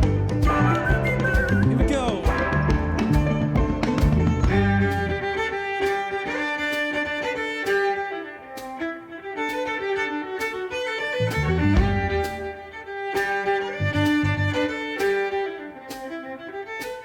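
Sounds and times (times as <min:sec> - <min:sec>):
low bass notes: 0:00.0 - 0:05.5, 0:11.2 - 0:12.5, 0:13.8 - 0:14.6
lively violin melody: 0:00.0 - 0:17.0.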